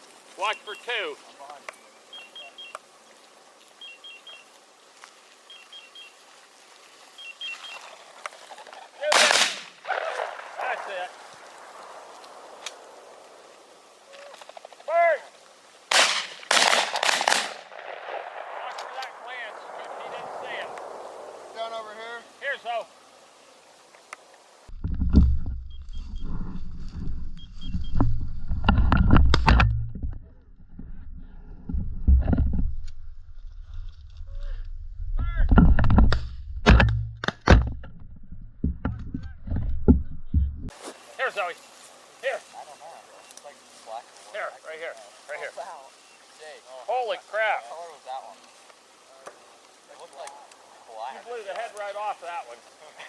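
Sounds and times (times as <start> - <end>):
faint rustling: 0.0 - 36.4, 39.0 - 53.0
wind rumbling on microphone: 9.9 - 14.7, 17.7 - 22.4, 24.7 - 40.8.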